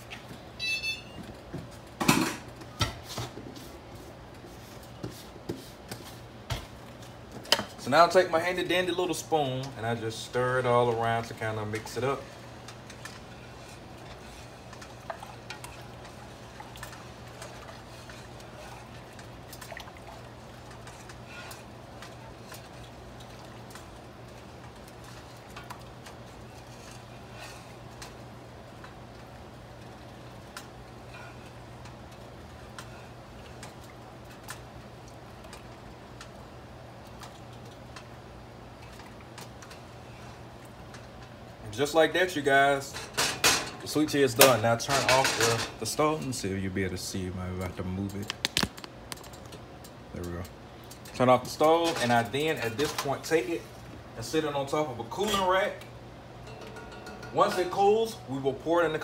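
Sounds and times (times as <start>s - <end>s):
spoon clinking against pot: 56.4s - 57.8s.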